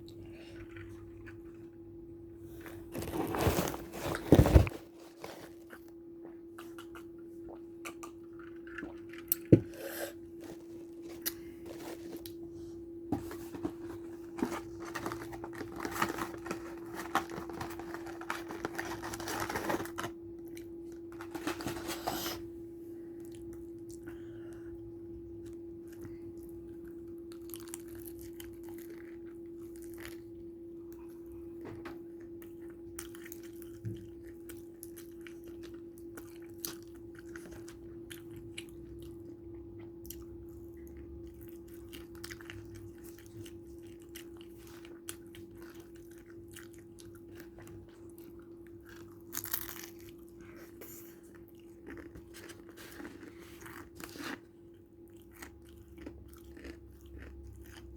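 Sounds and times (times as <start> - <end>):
steady low hum: 0.0 - 57.9
crunching fried chicken: 25.9 - 30.4, 32.8 - 57.9.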